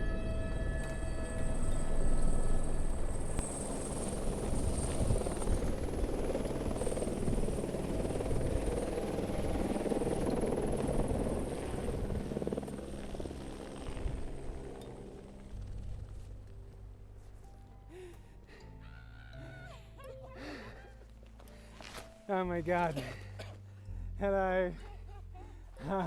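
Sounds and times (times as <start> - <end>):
helicopter running: 0.0 - 17.2
high turbine whine: 0.0 - 17.2.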